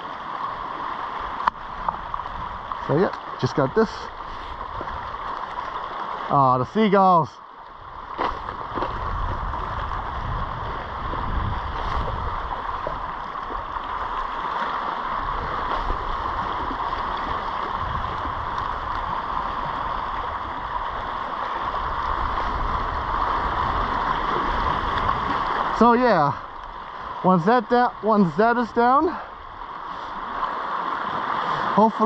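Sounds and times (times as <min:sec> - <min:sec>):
low uneven rumble: 0:07.5 - 0:27.4
sea swell against rocks: 0:07.8 - 0:32.0.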